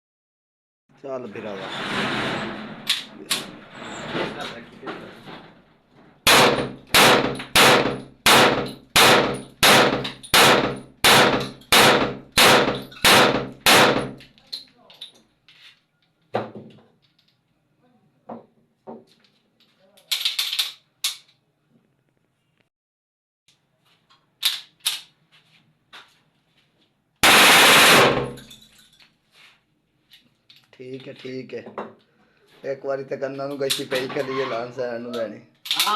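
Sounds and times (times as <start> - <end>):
gunshots with ringing tail: 6.3 - 14.2, 27.2 - 28.4
loud burst of gunfire: 6.3 - 14.2, 27.2 - 28.4.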